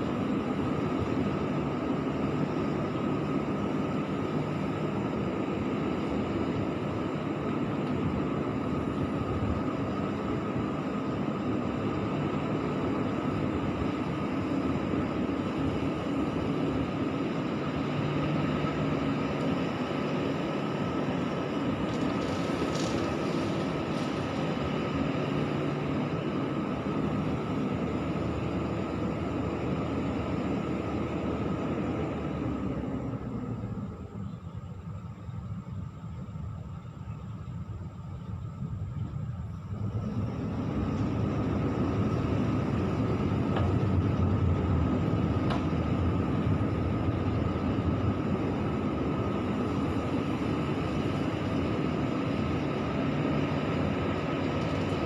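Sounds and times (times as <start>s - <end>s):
diesel engine running under load: 0.0s - 55.0s
steady whine: 0.0s - 55.0s
gravel being loaded: 21.2s - 25.6s.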